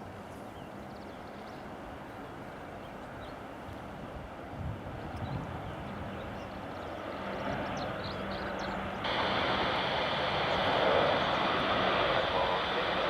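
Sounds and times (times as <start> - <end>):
aircraft engine hiss: 6.5 - 13.0.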